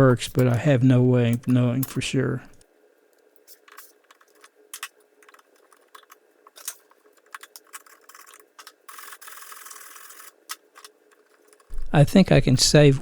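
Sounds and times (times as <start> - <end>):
tools clicking and tapping: 0.0 - 0.7, 1.3 - 2.6, 3.5 - 11.7.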